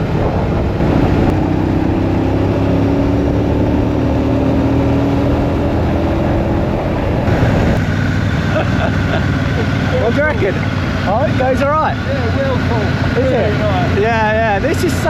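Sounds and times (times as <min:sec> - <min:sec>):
wind noise on microphone: 0:00.0 - 0:07.9
motorcycle engine cruising: 0:00.0 - 0:15.0.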